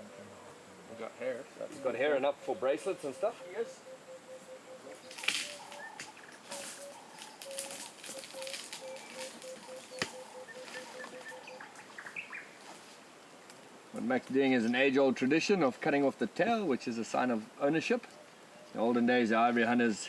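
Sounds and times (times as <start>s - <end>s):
repeated animal call: 1.6s - 12.6s
rustling and scraping: 5.0s - 13.1s.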